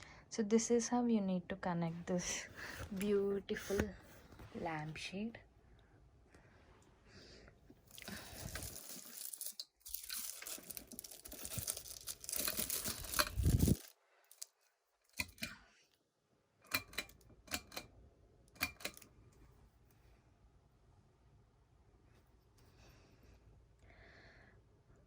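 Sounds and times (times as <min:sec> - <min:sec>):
packaging crinkling and rustling: 0:07.9 - 0:14.6.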